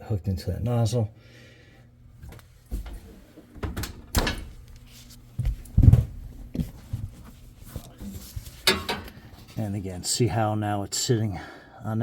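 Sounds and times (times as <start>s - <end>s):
metal oven parts knocking: 8.6s - 9.3s.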